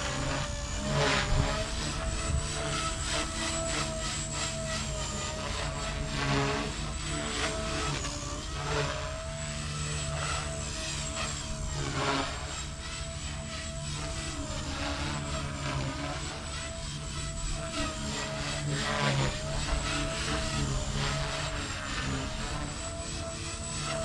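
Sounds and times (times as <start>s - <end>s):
rotor whoosh: 0.0s - 23.0s
rc helicopter motor whine: 0.0s - 24.0s.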